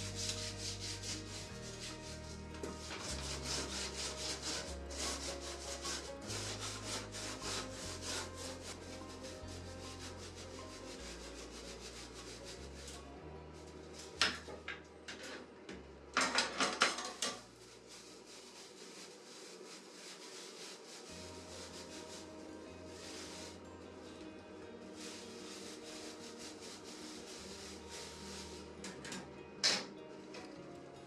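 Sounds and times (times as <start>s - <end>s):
scrubbing on steel: 0.0s - 13.0s, 24.8s - 29.2s
soft background music: 0.0s - 31.0s.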